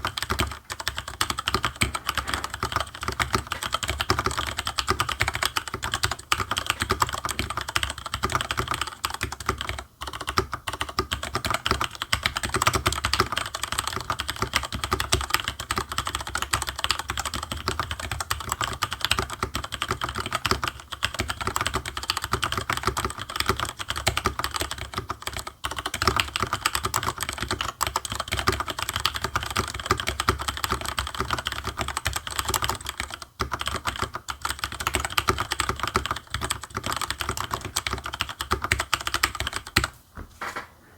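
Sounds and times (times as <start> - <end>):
fast mechanical keyboard typing: 0.0 - 39.9.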